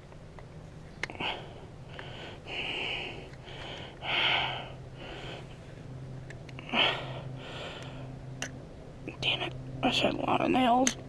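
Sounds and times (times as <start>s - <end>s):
man breathing heavily through nose: 1.0s - 6.0s, 6.6s - 8.4s.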